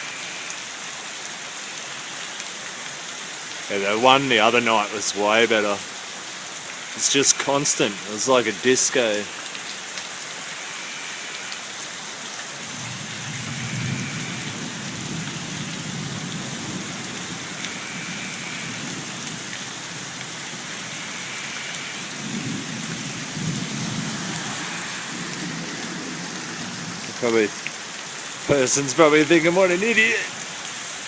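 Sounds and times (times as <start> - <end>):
heavy rain pouring: 0.0 - 31.0
low thunder rumbling: 22.0 - 27.8.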